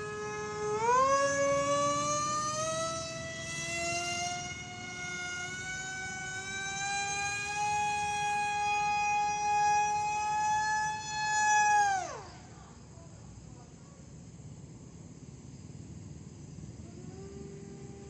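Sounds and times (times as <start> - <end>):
model airplane motor whining: 0.0 - 12.5, 16.8 - 18.0.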